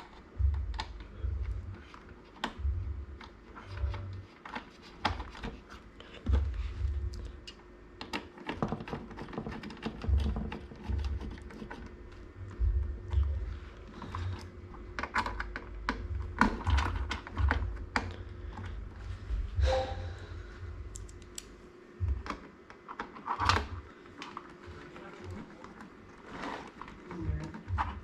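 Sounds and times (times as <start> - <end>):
hands handling computer hardware: 0.0 - 19.1, 22.1 - 28.0.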